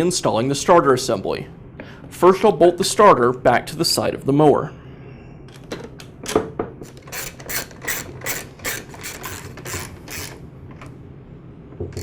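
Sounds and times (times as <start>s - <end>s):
ratchet wrench clicking: 7.0s - 10.4s.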